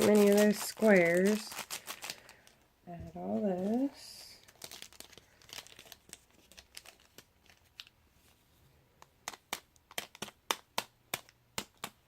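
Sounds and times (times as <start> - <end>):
plastic bags crinkling: 0.0 - 8.0.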